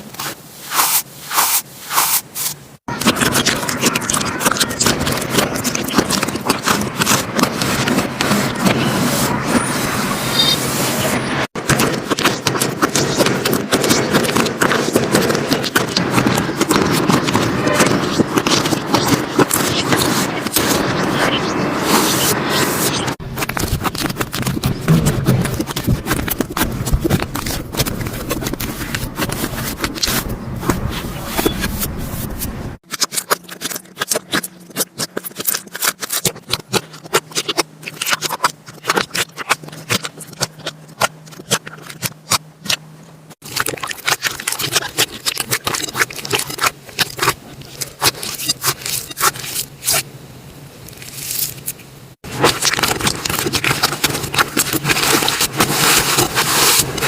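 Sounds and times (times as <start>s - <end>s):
slime crackling and popping: 50.9s - 57.0s.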